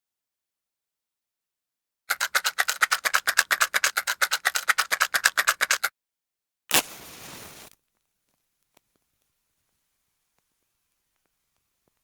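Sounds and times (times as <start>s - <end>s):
matches rattling in box: 2.1s - 5.9s
match flame hissing: 6.7s - 7.8s
match strike scrape: 6.7s - 7.8s.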